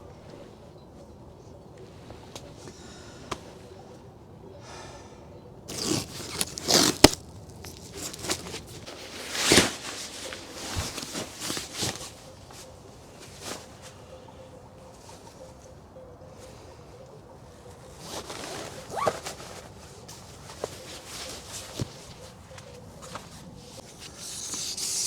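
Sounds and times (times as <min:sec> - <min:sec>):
scraping and rustling handling noise: 0:05.7 - 0:14.2, 0:17.6 - 0:25.0.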